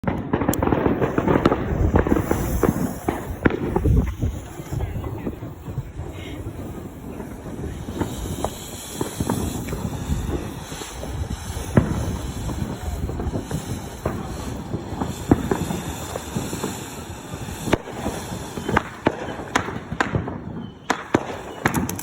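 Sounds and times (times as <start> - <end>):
firework pops and crackles: 0.0 - 22.0
firework rushing noise: 0.0 - 22.0.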